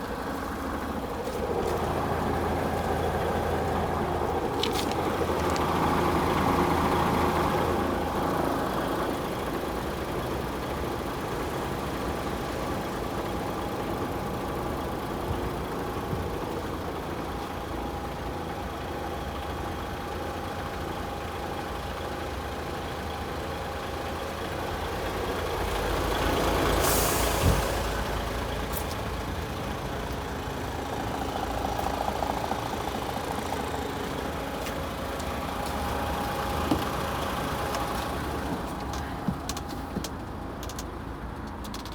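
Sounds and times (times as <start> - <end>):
diesel engine idling: 0.0 - 41.9
hiss of released air: 26.8 - 27.9.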